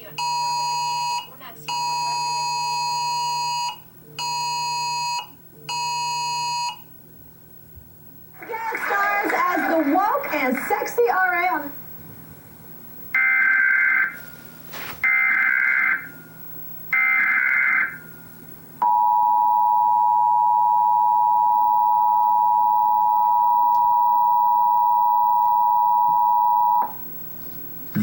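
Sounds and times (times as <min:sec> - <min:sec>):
two-tone attention signal: 0:18.8 - 0:26.9.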